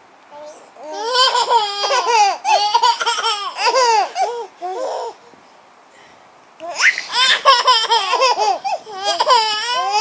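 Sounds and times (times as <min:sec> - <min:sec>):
baby girls laughing: 0:01.0 - 0:05.2, 0:06.6 - 0:10.0.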